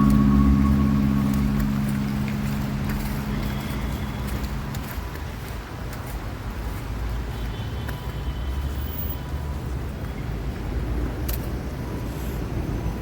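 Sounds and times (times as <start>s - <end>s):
steady low hum: 0.0s - 5.1s
distant road traffic: 0.0s - 13.0s.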